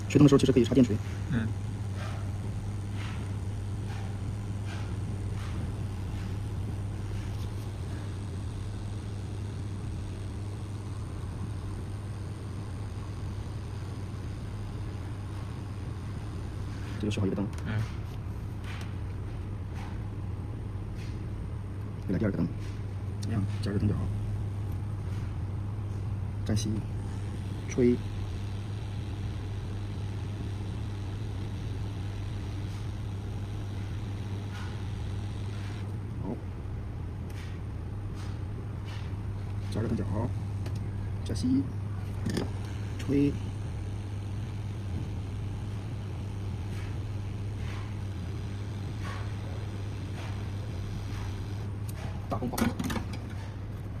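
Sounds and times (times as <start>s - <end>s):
hot-air gun blowing: 0.0s - 17.2s, 25.9s - 36.0s, 42.0s - 52.2s
low hum: 0.0s - 20.6s, 22.4s - 54.0s.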